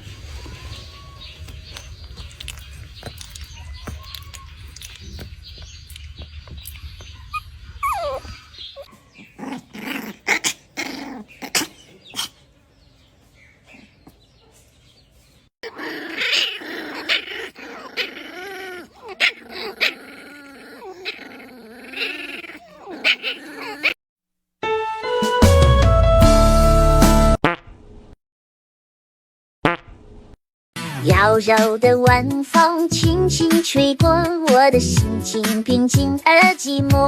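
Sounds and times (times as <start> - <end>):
puppy growling and whimpering: 7.0 - 12.3, 15.6 - 24.0.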